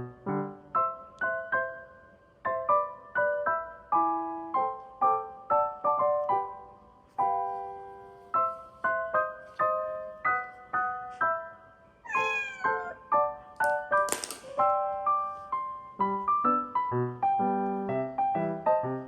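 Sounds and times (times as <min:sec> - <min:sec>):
light piano music: 0:00.0 - 0:19.0
cat meowing: 0:12.0 - 0:13.2.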